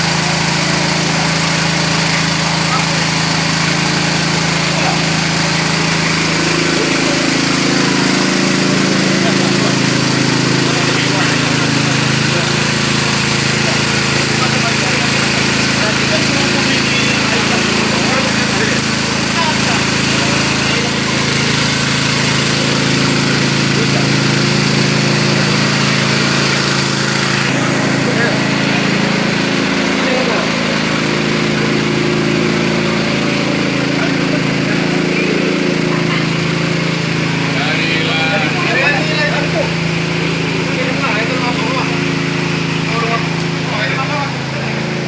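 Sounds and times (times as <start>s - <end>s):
petrol engine driving water pump: 0.0s - 45.0s.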